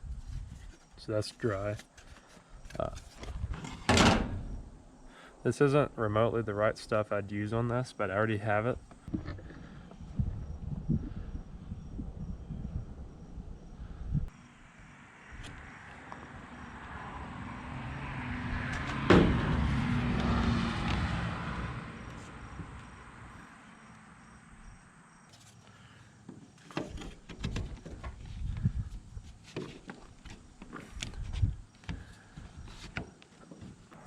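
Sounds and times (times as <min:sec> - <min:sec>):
vehicle passing by: 0:14.7 - 0:23.8.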